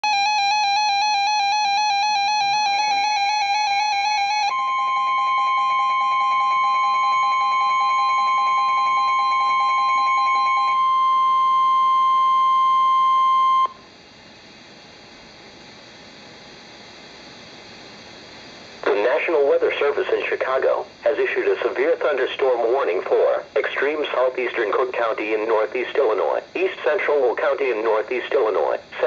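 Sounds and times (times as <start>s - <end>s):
warbling electronic alert tone: 0.0s - 13.7s
steady alarm tone: 0.0s - 13.9s
faint radio hiss: 17.2s - 29.0s.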